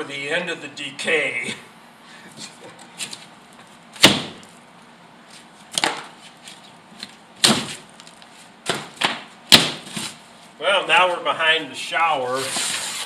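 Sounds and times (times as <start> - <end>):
wall being broken by hand: 4.0 - 4.5, 7.4 - 10.2.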